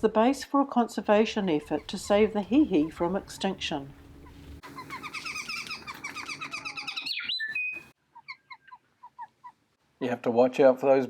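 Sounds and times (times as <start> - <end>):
small songbirds chirping: 1.1 - 9.2.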